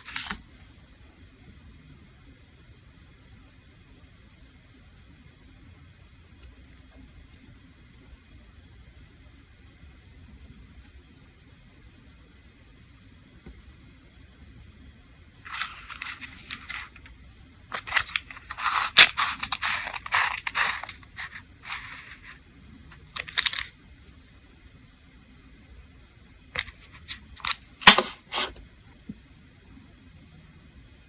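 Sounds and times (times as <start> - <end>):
scraping and rustling of objects: 15.4 - 23.8.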